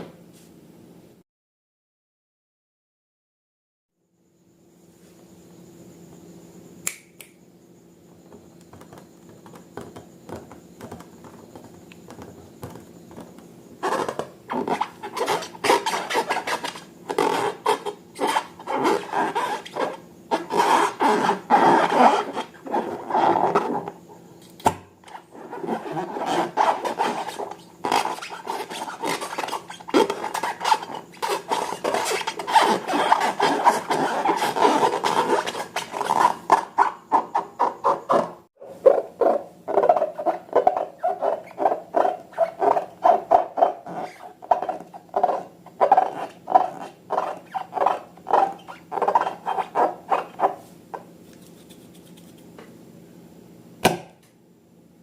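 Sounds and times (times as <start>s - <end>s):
faint hum: 4.0s - 55.0s
sharp click: 6.8s - 7.4s
slime rubbing and crackling: 25.4s - 37.7s.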